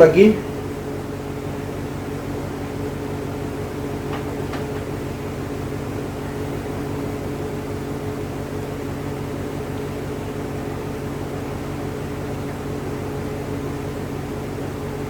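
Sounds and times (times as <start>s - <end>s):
steady machine hum: 0.0s - 15.0s.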